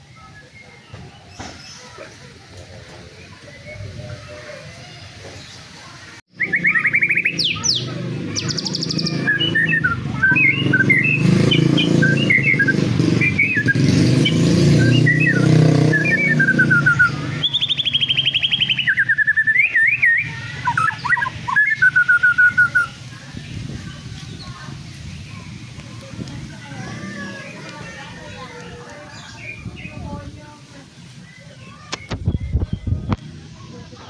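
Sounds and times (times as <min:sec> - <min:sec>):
bird singing whistled notes and trills: 0:06.3 - 0:24.6, 0:30.9 - 0:33.2.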